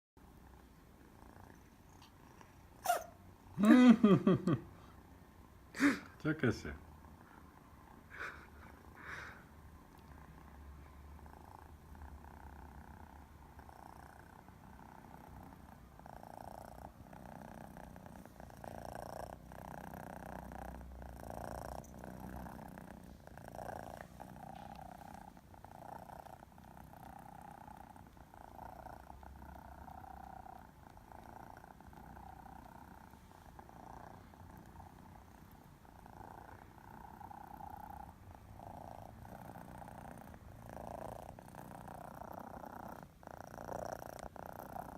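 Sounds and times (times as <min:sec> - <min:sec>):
cat purring: 0:00.2 - 0:05.6, 0:06.4 - 0:44.9.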